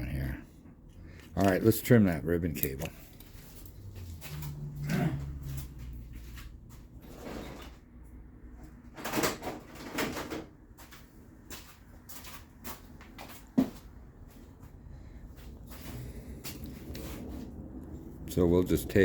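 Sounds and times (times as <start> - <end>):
rustling of tools on workbench: 0.9 - 7.9.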